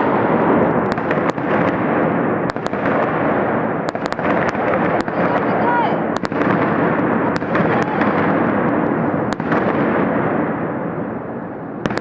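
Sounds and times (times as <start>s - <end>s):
sharp firework cracks: 0.0s - 11.2s, 11.8s - 12.0s
fireworks and firecrackers crackling: 0.0s - 12.0s.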